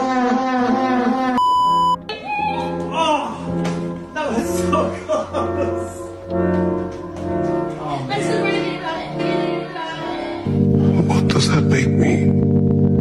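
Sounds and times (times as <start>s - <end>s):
melody of long held notes: 1.4s - 13.0s
low chord: 2.9s - 13.0s.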